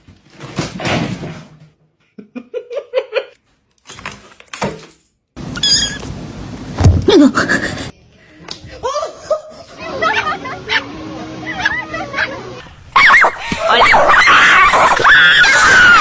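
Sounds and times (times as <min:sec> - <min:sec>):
knocks and handling noise: 0:04.0 - 0:07.1
cat meowing: 0:05.5 - 0:06.1.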